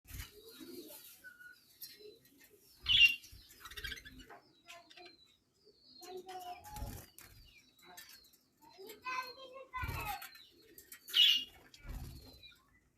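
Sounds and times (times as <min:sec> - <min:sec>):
budgerigar chirping and chattering: 0:02.8 - 0:05.4.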